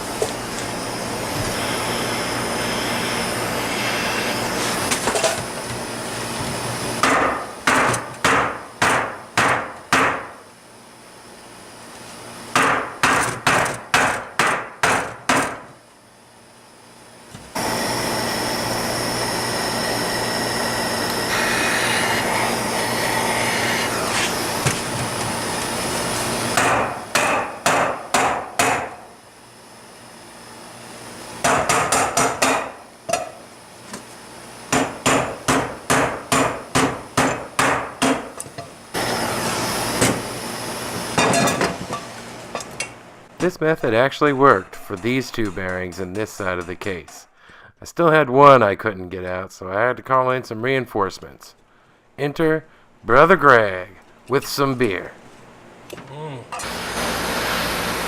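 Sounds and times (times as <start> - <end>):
torch hissing: 0.5 - 4.9, 19.3 - 26.6.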